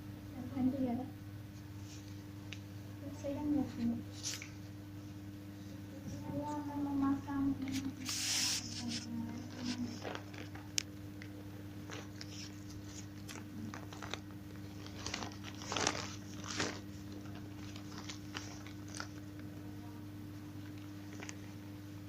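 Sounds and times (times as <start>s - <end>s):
steady low hum: 0.0s - 22.0s
material crinkling and rustling: 7.7s - 10.9s, 11.8s - 19.5s, 20.6s - 21.6s.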